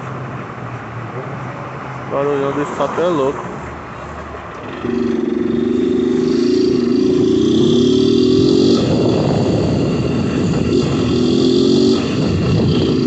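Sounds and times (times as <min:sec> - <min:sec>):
rough noise: 0:04.5 - 0:13.0.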